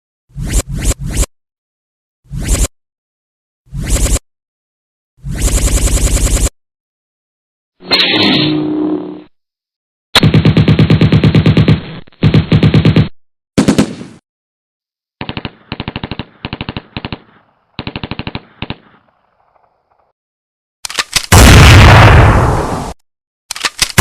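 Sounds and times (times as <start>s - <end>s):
automatic gunfire bursts: 15.2s - 18.8s.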